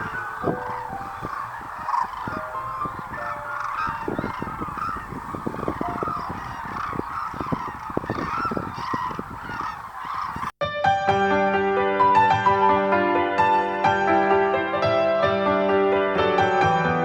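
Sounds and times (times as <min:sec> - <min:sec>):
cranes honking: 0:00.0 - 0:10.5.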